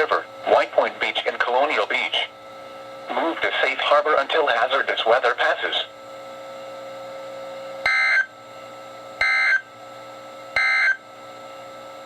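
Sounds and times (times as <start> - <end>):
faint steady hum: 0.0 - 12.0
radio hiss: 3.1 - 5.9.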